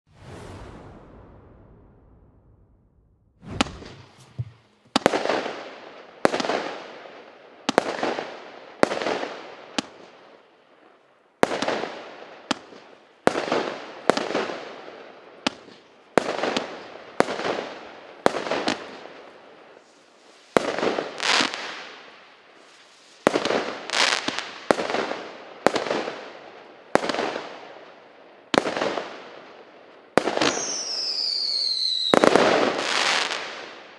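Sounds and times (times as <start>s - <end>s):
whistling firework comet: 0.1s - 4.2s, 30.4s - 33.6s.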